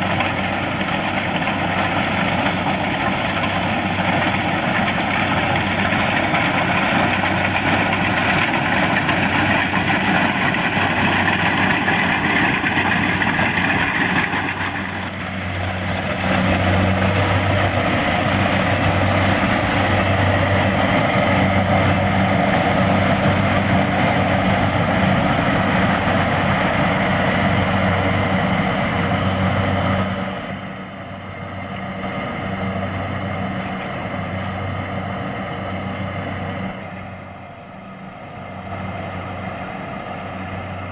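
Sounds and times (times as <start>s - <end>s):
machinery clattering: 0.0s - 28.2s
combine harvester engine hum: 0.0s - 40.9s.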